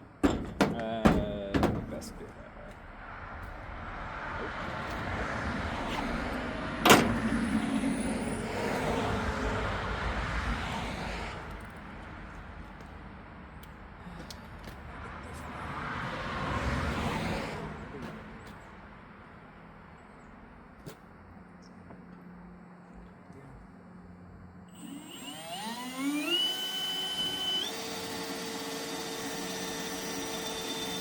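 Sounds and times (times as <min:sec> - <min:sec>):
sharp knock: 0:00.2 - 0:02.3
power drill drilling metal: 0:24.7 - 0:31.0.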